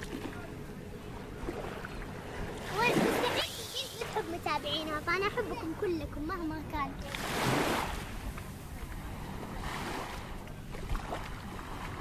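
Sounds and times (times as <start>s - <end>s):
sea waves at shore: 0.0s - 12.0s.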